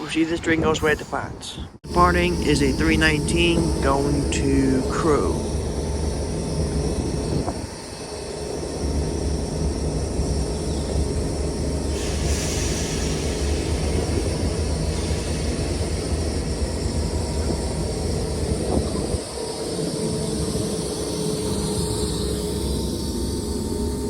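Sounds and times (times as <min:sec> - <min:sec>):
train low rumble: 0:00.0 - 0:24.0
hiss: 0:11.8 - 0:18.8.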